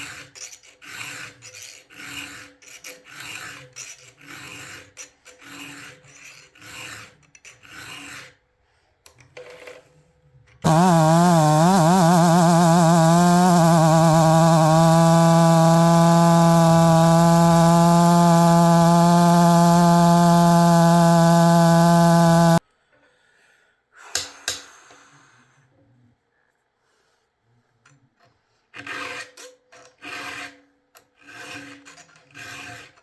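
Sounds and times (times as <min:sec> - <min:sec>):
file rasping on chainsaw chain: 0:00.0 - 0:08.4, 0:10.7 - 0:22.6, 0:28.8 - 0:33.0
loud steady hum: 0:10.7 - 0:22.6.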